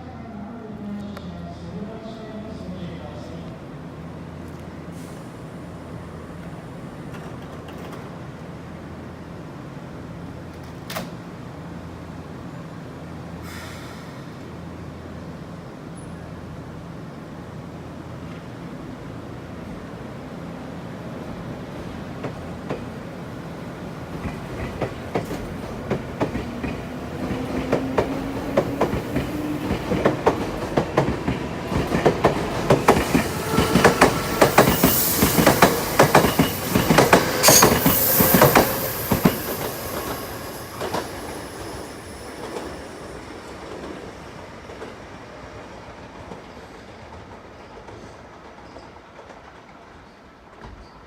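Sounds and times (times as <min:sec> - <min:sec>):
train wheels clattering: 0:24.1 - 0:45.0.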